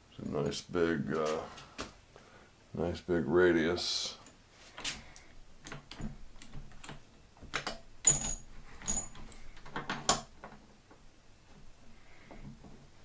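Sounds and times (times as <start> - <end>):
light metal clicks and knocks: 5.6 - 11.0.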